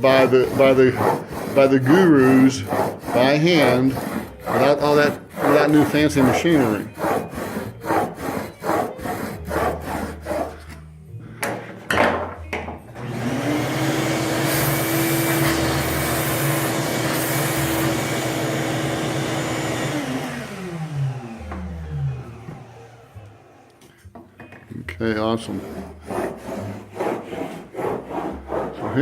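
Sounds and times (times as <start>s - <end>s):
blade rubbing on whetstone: 0.0s - 10.8s, 25.4s - 29.0s
electric motor running: 13.0s - 23.6s.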